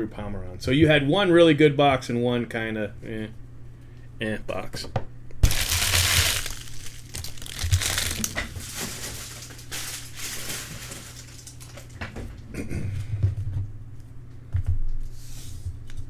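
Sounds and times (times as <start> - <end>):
packaging crinkling and rustling: 5.4 - 12.0.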